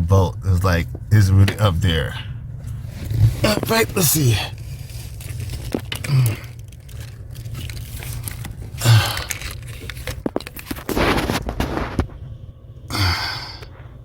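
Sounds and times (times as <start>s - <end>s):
person grunting: 6.0s - 6.5s, 8.8s - 9.3s, 12.9s - 13.7s
person breathing: 12.9s - 13.8s.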